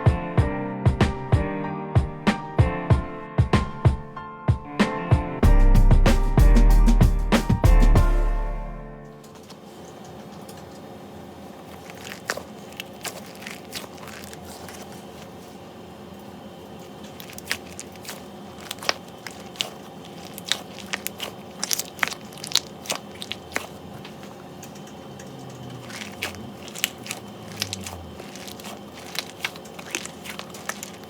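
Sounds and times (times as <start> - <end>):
squishy toy crackling crunches: 11.6 - 15.5, 16.8 - 31.0.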